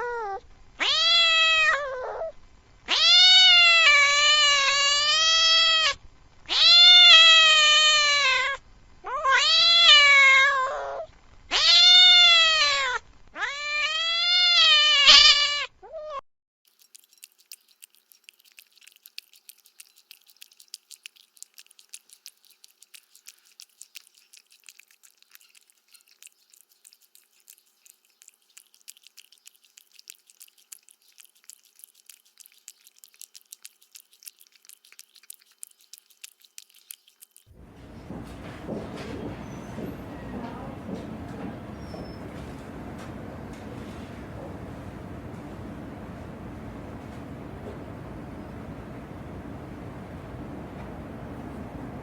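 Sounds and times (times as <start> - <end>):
cat meowing: 0.0 - 2.3, 2.9 - 16.2.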